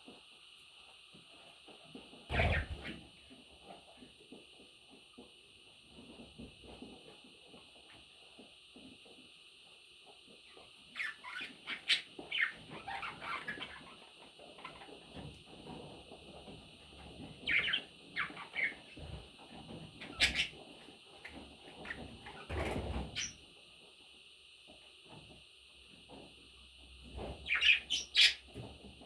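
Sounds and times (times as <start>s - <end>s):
bird chicks chirping: 10.4s - 15.3s, 17.2s - 20.7s, 27.4s - 28.7s.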